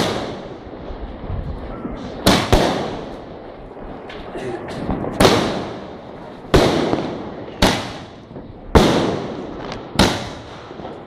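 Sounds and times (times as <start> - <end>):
firework cake bangs: 0.0 - 0.5, 1.8 - 3.2, 4.0 - 11.0.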